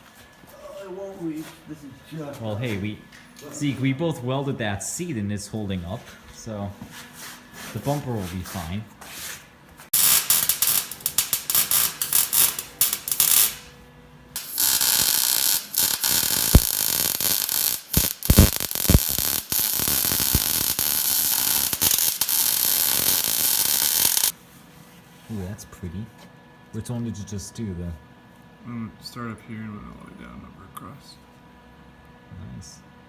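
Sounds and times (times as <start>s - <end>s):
arc welder crackling hiss: 9.9s - 13.8s, 14.4s - 24.4s.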